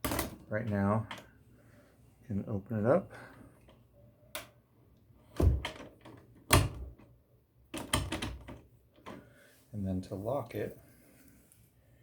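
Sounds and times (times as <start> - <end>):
door thuds: 5.4 - 5.8.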